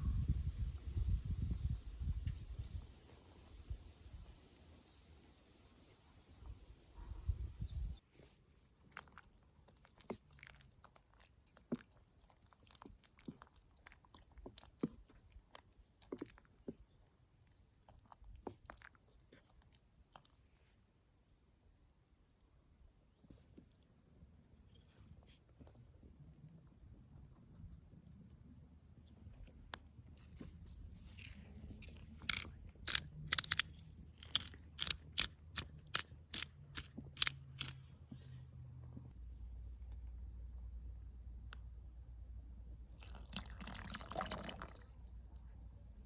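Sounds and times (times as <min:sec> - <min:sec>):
chewing and crunching food: 0:08.2 - 0:21.1, 0:29.0 - 0:38.4, 0:42.9 - 0:45.6
small irregular clicks: 0:29.0 - 0:37.9.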